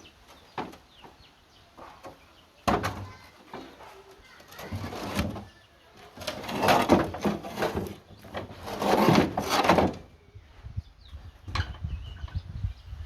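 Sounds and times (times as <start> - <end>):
rough scraping of building material: 2.7 - 10.1.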